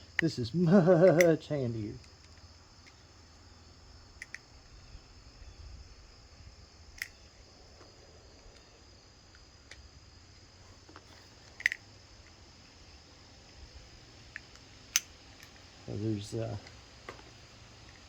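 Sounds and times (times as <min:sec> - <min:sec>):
crickets chirping: 0:00.0 - 0:18.0
metal clicks and taps: 0:04.2 - 0:04.5, 0:07.0 - 0:07.2, 0:11.4 - 0:11.8.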